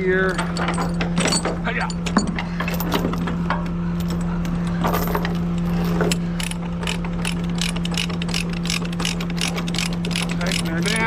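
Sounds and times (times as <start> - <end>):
steady low hum: 0.0 - 11.0
ratchet pawl clicking: 6.4 - 11.0.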